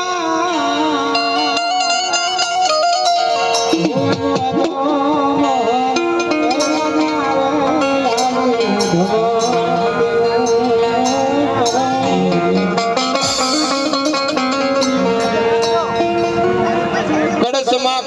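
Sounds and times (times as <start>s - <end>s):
percussion strikes: 0.0s - 18.0s
plucked string melody: 0.0s - 18.0s
steady drone: 3.7s - 17.6s.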